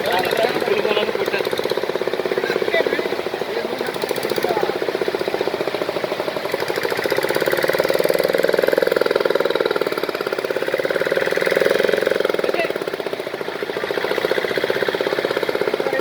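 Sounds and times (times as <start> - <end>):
engine knocking: 0.0 - 16.0.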